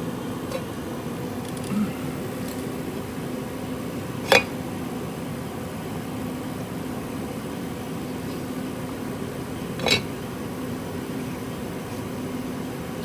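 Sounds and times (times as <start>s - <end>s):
steady mechanical hum: 0.0s - 13.0s.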